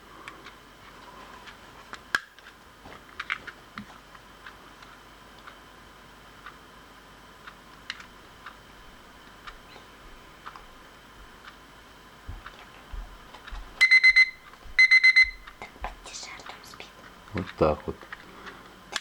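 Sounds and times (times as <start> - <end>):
rapid high electronic alarm beeps: 13.8 - 15.5.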